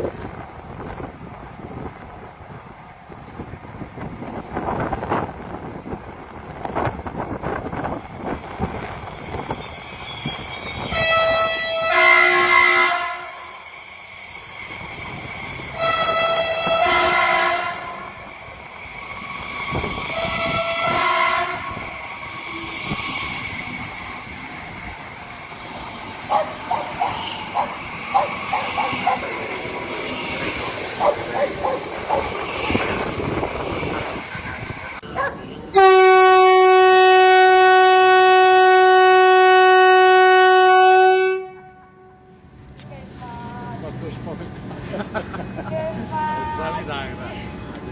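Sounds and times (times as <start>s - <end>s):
train horn blasts: 9.6s - 13.6s, 15.7s - 18.3s, 20.1s - 22.0s, 35.7s - 42.4s
train wheels clicking over rail joints: 18.2s - 35.1s.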